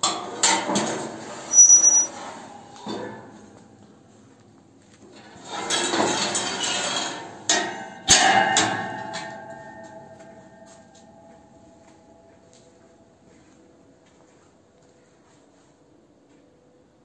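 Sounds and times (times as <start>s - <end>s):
steel parts clattering: 5.5s - 7.7s.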